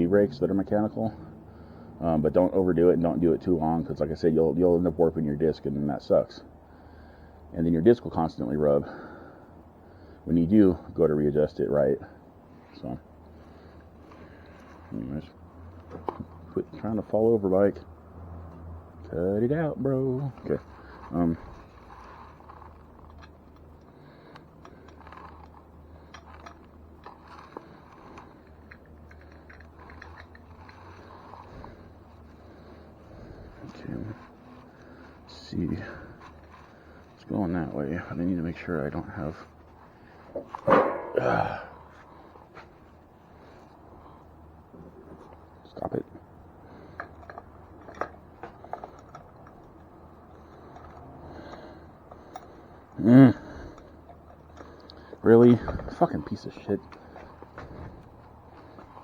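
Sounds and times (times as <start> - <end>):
hands clicking and scraping hardware: 11.8 - 59.0.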